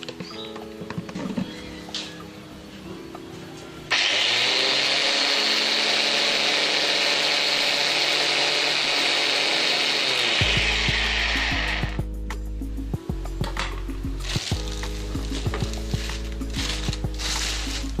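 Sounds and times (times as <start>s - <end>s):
angle grinder grinding: 3.9s - 12.0s, 14.2s - 18.0s.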